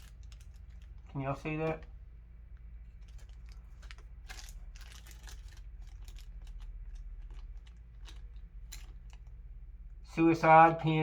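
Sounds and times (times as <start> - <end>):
small objects clicking and rustling: 0.0 - 1.9, 2.9 - 9.4
steady low hum: 0.0 - 11.0.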